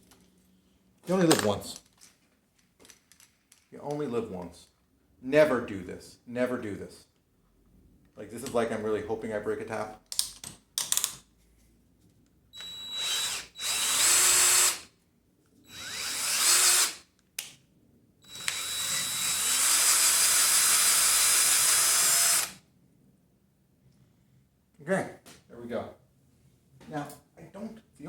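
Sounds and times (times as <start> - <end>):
power drill tapping metal: 18.3 - 22.6.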